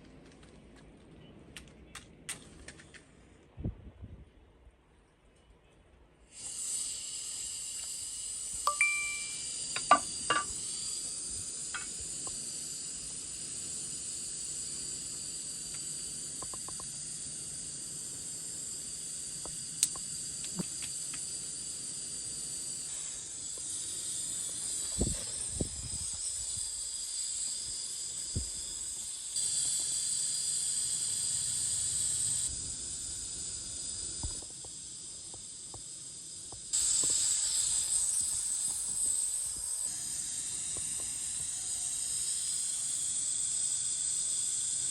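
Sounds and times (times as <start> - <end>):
sharp clicks and knocks: 9.8 - 10.5.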